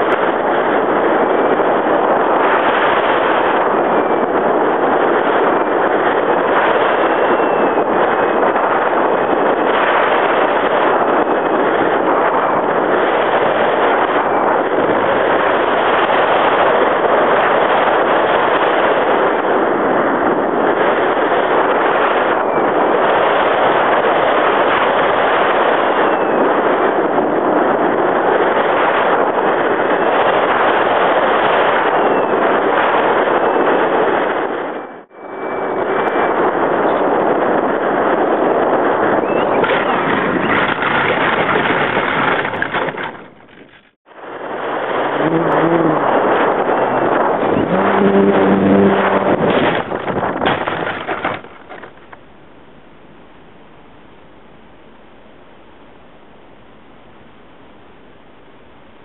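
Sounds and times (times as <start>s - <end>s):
wind rush: 0.0s - 52.3s
faint gliding whine: 34.7s - 38.2s, 44.1s - 58.9s.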